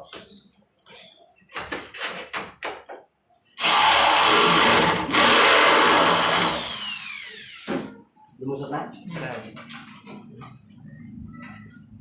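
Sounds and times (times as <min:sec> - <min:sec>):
electric drill boring through wood: 0:03.6 - 0:07.9.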